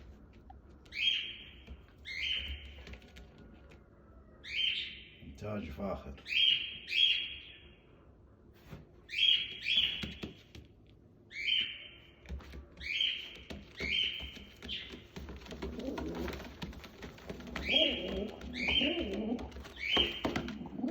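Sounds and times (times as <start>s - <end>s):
birds chirping: 0.0s - 3.1s, 3.9s - 8.1s, 9.1s - 10.5s, 11.2s - 20.9s.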